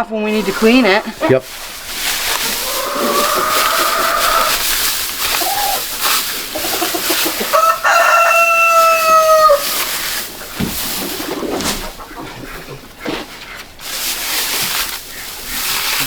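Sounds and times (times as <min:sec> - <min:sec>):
steady hiss: 0:00.0 - 0:12.7
rooster crowing: 0:02.4 - 0:04.8, 0:06.6 - 0:09.9.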